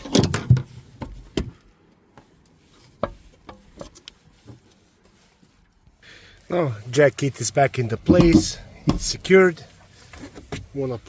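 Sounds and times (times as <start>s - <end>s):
sharp clicks and knocks: 7.9s - 9.3s.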